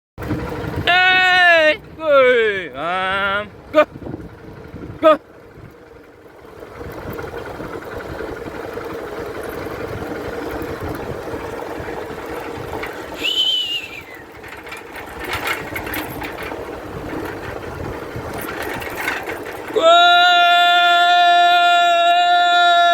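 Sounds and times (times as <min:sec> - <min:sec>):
small engine running: 0:00.2 - 0:22.9
high whistle: 0:13.2 - 0:14.3.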